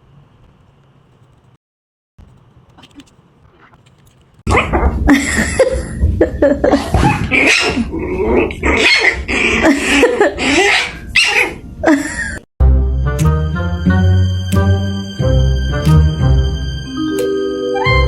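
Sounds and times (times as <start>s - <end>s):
dog barking: 7.0s - 7.8s, 9.8s - 11.6s.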